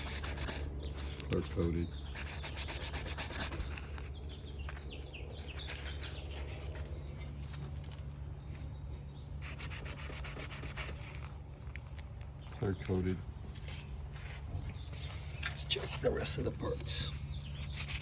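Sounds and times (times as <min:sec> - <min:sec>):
rubbing on painted metal: 0:00.0 - 0:07.8, 0:09.4 - 0:11.3, 0:13.6 - 0:18.0
steady low hum: 0:00.0 - 0:18.0.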